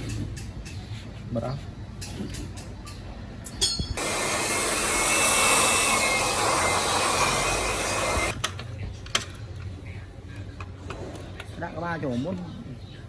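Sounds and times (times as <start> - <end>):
clink: 2.6 - 4.0
power tool hissing and whining: 4.0 - 8.4.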